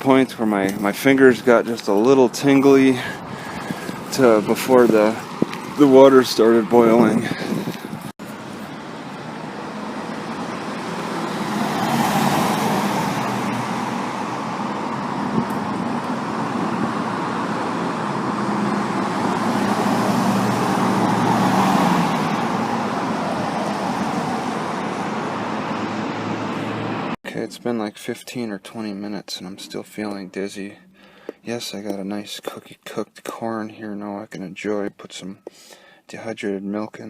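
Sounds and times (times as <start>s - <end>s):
motor vehicles passing: 0.0s - 27.2s.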